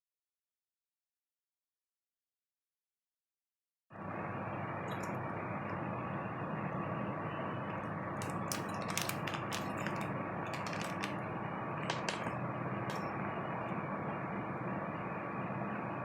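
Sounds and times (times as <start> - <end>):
low hum with thin whine: 4.0 - 16.0.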